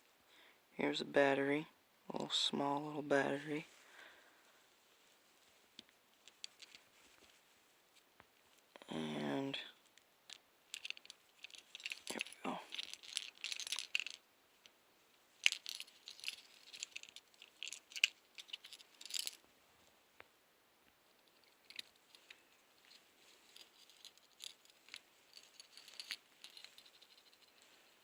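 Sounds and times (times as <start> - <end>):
small plastic parts clicking: 5.8 - 6.8, 9.9 - 14.2, 15.4 - 19.4, 23.6 - 27.7.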